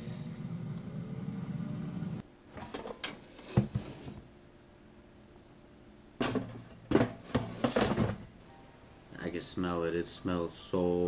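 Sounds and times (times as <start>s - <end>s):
air fryer fan hum: 0.0s - 2.9s.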